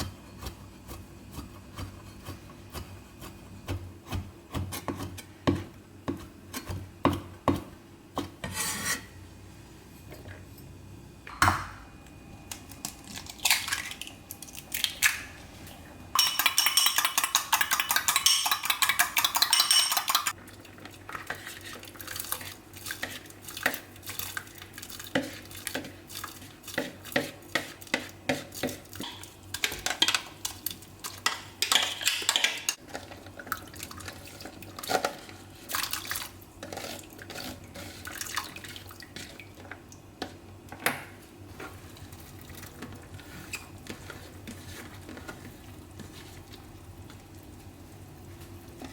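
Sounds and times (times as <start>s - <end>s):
utensils clinking against dishes: 16.2s - 20.4s, 29.0s - 33.1s.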